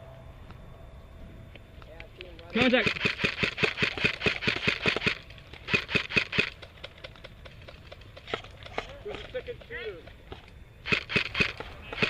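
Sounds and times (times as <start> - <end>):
airsoft gun firing bursts: 2.6 - 8.4, 10.8 - 12.0.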